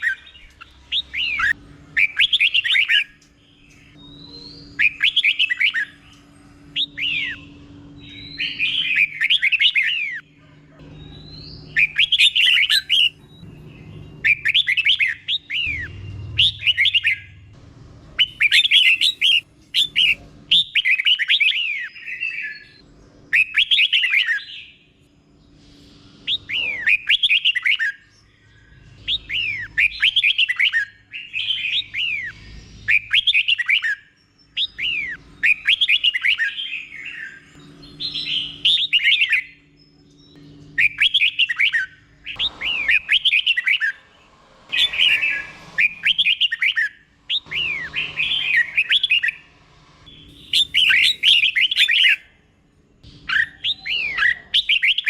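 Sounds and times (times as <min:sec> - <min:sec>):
bulbul singing whistled notes: 0:50.1 - 0:52.3.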